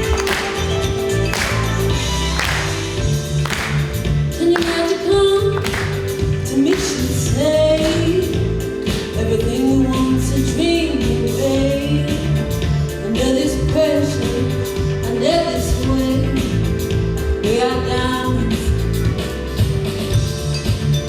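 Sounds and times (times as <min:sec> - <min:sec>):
bass and drums: 0:00.0 - 0:21.0
woman singing wordless lines: 0:04.4 - 0:12.2.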